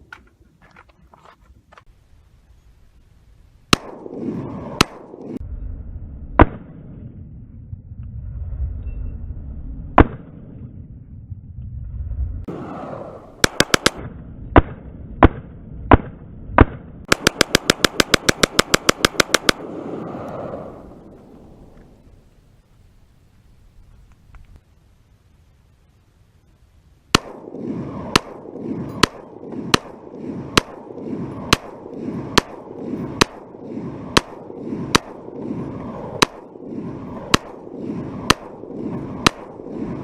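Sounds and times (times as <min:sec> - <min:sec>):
gunshots: 0:03.7 - 0:05.4, 0:10.0 - 0:10.5, 0:13.4 - 0:19.7, 0:27.1 - 0:40.0.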